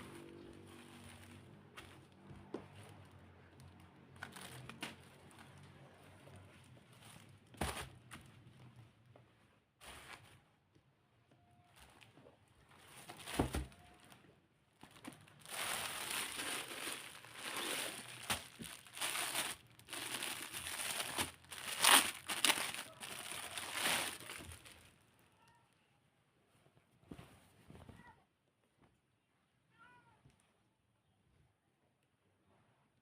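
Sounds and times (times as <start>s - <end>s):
packaging crinkling: 14.8s - 24.9s.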